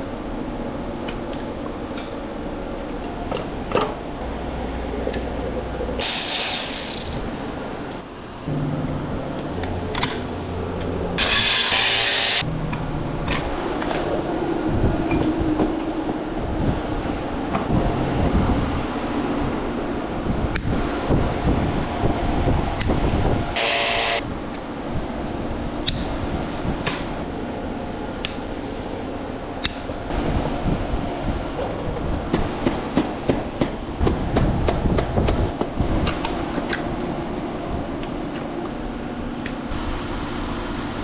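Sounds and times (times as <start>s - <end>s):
fan-like hum: 0.0s - 41.0s.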